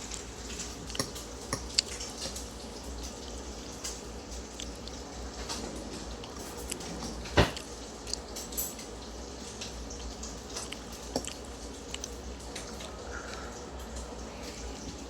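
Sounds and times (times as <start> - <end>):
low background hum: 0.0 - 15.0
cutlery clinking on a plate: 7.4 - 8.9.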